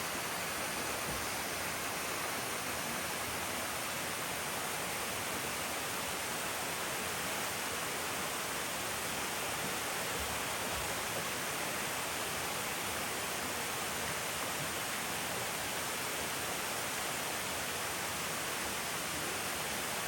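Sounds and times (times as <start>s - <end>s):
waterfall rushing: 0.0s - 10.0s.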